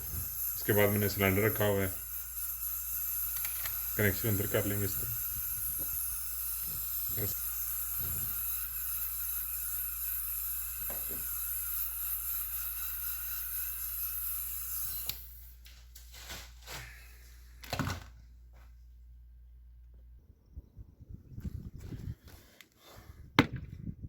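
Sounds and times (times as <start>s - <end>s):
gas torch hissing: 0.0s - 15.6s.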